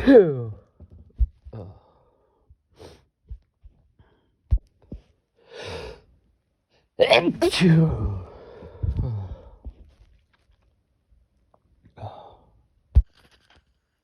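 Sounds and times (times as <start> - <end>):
person sniffing: 2.8 - 3.1
person sneezing: 7.1 - 7.9
breathy sigh: 8.2 - 9.7.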